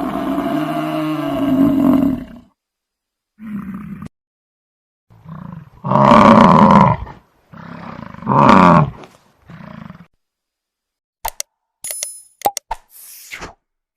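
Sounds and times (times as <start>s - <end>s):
sharp click: 11.2s - 13.5s.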